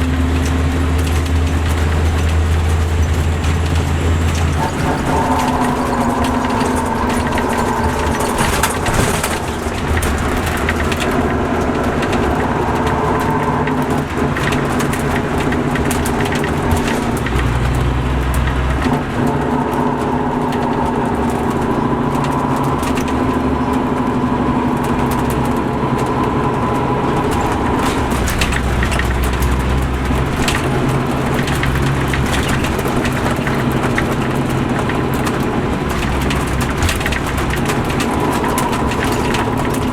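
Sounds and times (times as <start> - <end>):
diesel engine running: 0.0 - 39.9
rattles and clicks: 0.0 - 39.9.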